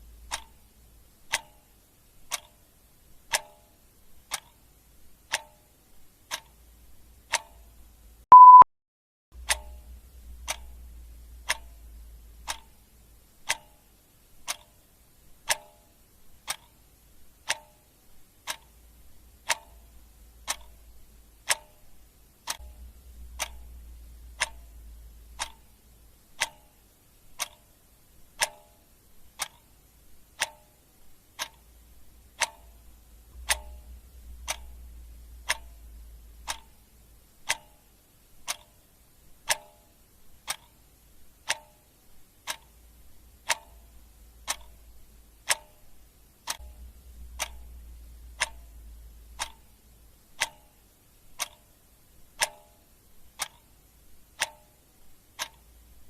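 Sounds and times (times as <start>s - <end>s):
clock ticking: 0.0s - 8.6s, 9.4s - 56.0s
short beep: 8.3s - 8.7s.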